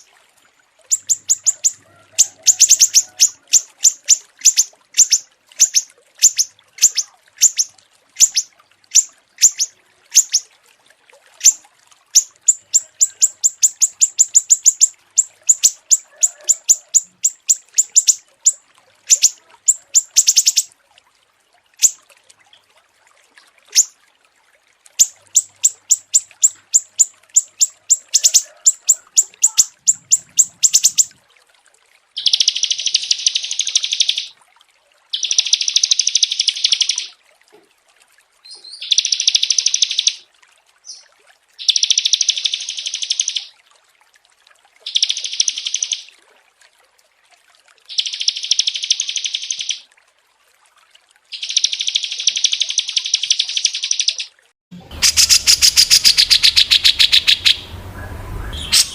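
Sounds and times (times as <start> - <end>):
buzzing bird trills: 0.9 - 10.4, 25.0 - 31.1, 54.9 - 58.9
small songbird singing: 0.9 - 10.4, 12.2 - 20.7, 25.0 - 31.1, 32.2 - 34.3, 51.4 - 54.3, 55.0 - 58.9.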